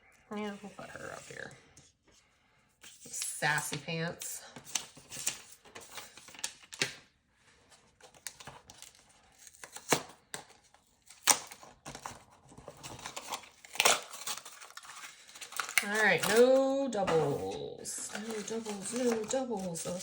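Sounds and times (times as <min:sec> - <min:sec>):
packaging being torn and crinkled: 0:08.0 - 0:16.5.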